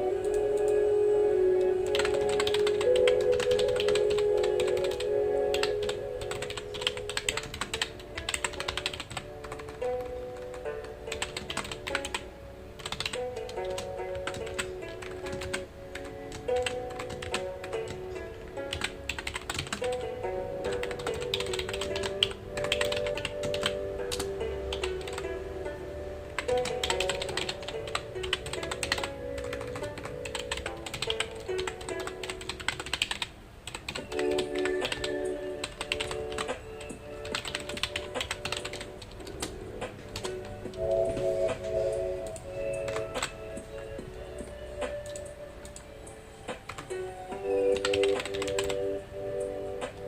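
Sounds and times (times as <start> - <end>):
soft background music: 0.0 - 50.0
computer keyboard typing: 1.7 - 25.3, 26.3 - 40.9, 42.2 - 43.8, 44.4 - 50.0.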